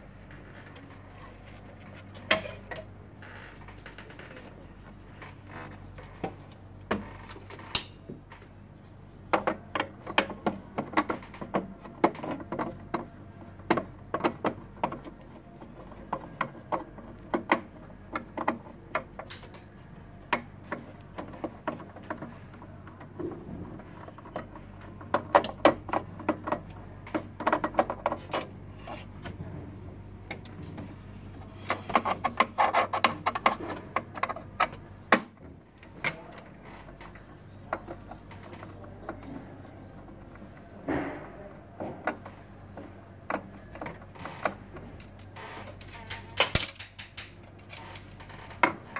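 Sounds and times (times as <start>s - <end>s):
low steady hum: 0.0s - 48.9s
plastic and metal parts clattering: 9.3s - 29.5s, 30.3s - 48.9s.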